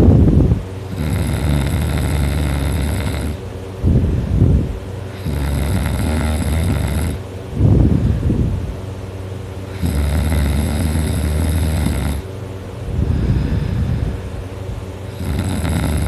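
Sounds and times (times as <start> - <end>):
person snoring loudly: 0.9 - 3.4, 5.1 - 7.2, 9.7 - 12.3, 15.1 - 16.0
burst of breath: 13.0 - 14.3.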